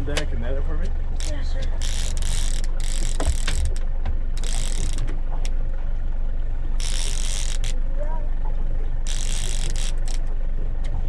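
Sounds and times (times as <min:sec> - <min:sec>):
fishing reel clicking and ratcheting: 0:01.2 - 0:03.8, 0:04.4 - 0:05.1, 0:06.8 - 0:07.8, 0:09.0 - 0:10.3.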